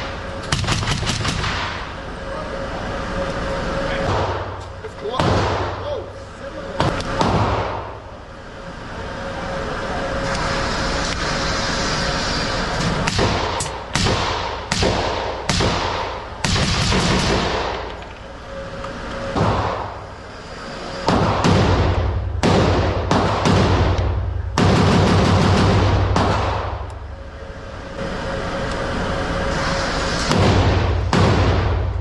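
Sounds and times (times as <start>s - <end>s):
gunshots with ringing tail: 0.5s - 1.9s, 13.1s - 17.9s, 21.0s - 26.8s, 30.3s - 31.9s.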